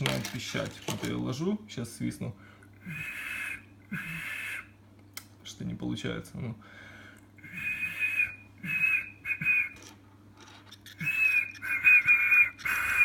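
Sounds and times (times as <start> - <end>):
man whistling short high whistles: 7.5 - 9.8, 11.0 - 13.0.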